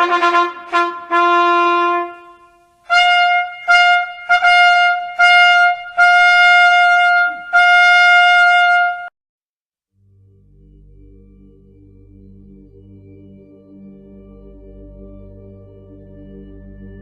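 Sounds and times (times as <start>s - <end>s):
trumpet call on one pitch: 0.0s - 9.1s.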